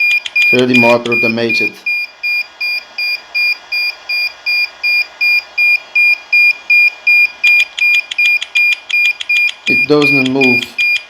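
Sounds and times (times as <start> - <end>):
high-pitched warning beeps: 0.0 - 11.0.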